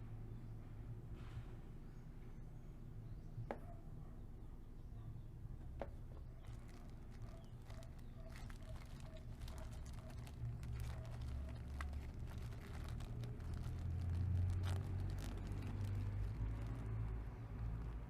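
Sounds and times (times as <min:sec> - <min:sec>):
light clicks and rustles: 0:05.8 - 0:18.0
vehicle engine rumble: 0:05.8 - 0:18.0.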